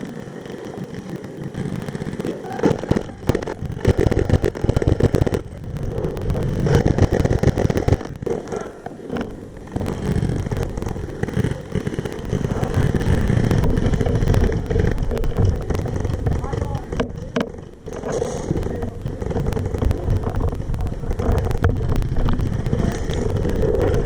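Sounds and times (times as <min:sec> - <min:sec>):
steady low rumble: 0:00.0 - 0:24.0.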